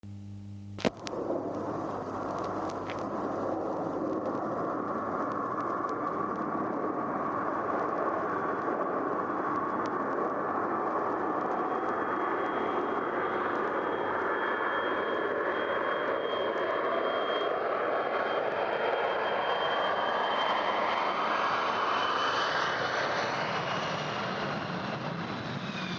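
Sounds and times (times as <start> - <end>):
vinyl crackle: 0.0 - 6.4
jet airliner roar: 0.9 - 25.9.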